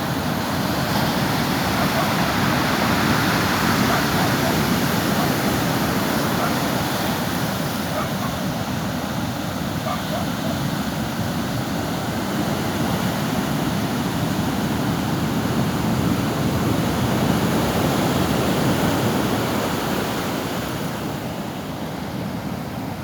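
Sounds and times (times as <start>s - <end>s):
surf washing onto beach: 0.0s - 23.0s.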